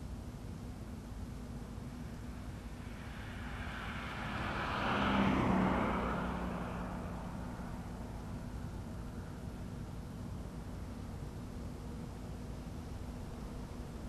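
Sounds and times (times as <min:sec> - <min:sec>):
vehicle passing by: 0:02.6 - 0:08.6.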